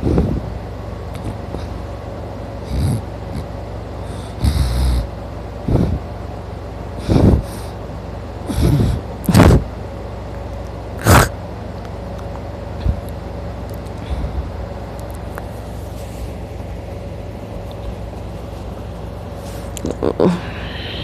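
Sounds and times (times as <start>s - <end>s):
steady low hum: 0.0s - 21.0s
man snoring loudly: 4.2s - 5.1s.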